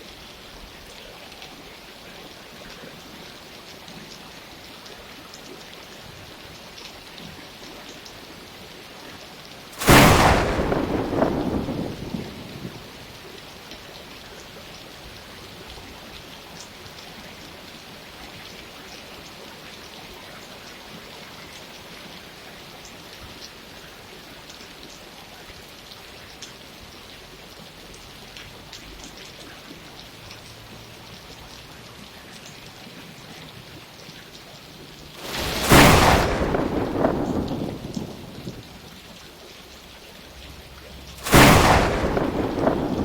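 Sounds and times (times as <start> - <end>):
steady rain: 0.0 - 43.0
thunderclap rumbling: 9.8 - 13.4, 35.2 - 39.1, 41.2 - 43.0
raindrop ticks: 27.8 - 31.7, 34.0 - 43.0.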